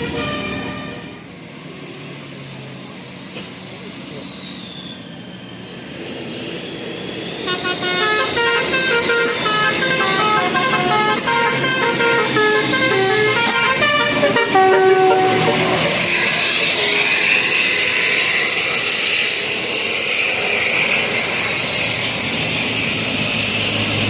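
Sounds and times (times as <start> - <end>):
bus horn playing melody: 0.0 - 1.3, 7.5 - 16.1
bus engine rushing by: 0.0 - 24.0.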